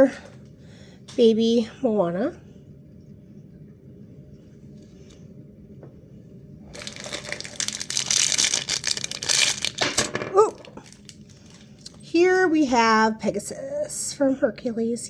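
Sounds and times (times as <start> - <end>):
plastic wrapper crinkling torn open: 6.7 - 12.0.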